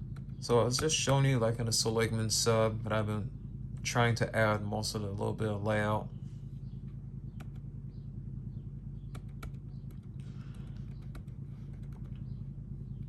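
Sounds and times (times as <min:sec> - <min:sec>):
low hum: 0:00.0 - 0:13.0
sharp clicks: 0:06.9 - 0:07.7, 0:09.0 - 0:12.4.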